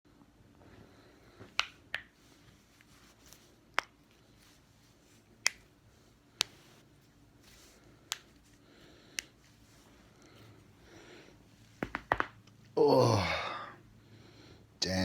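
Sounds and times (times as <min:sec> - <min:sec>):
neck joints cracking: 0:11.8 - 0:12.7.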